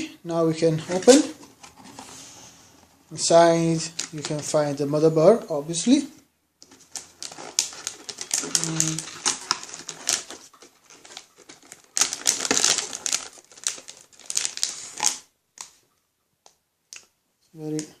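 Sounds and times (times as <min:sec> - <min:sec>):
plastic and cardboard crinkling: 0:00.7 - 0:02.2, 0:06.6 - 0:15.8.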